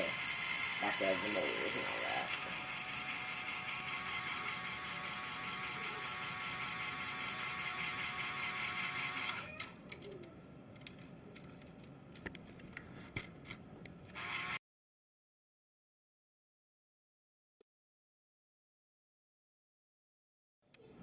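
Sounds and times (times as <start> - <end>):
toy motor whining through gears: 0.0 - 10.3, 14.2 - 14.6
plastic parts clicking and tapping: 9.6 - 14.0.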